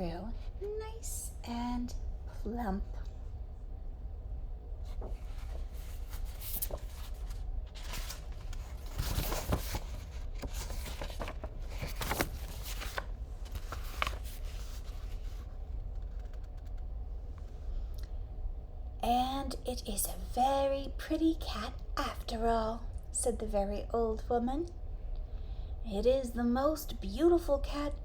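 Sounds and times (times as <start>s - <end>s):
steady low hum: 0.0s - 28.0s
paper pages rustling: 4.8s - 16.9s.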